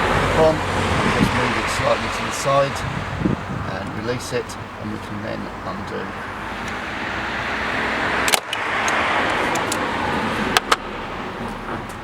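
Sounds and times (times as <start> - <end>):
car passing: 0.0 - 12.0
sharp clicks of mole grips: 8.3 - 9.9.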